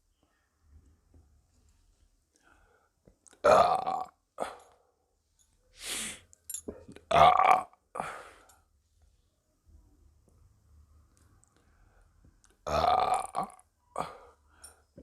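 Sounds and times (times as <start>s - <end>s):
woman burping: 7.1s - 7.7s, 12.7s - 14.2s.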